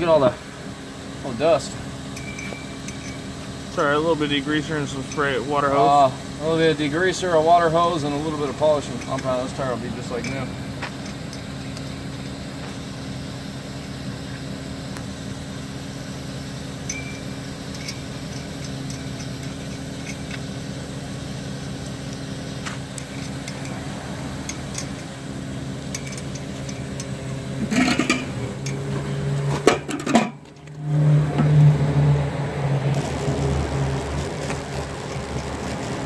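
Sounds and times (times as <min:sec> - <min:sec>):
low mechanical hum: 0:00.0 - 0:36.0
knocks and clinks: 0:02.2 - 0:03.3.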